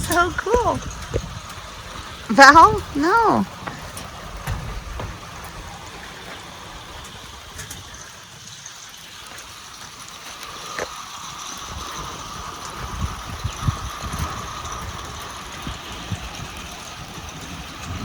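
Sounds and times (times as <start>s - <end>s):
low bumps: 0.0s - 8.0s, 17.6s - 18.0s
light rain falling: 0.0s - 18.0s.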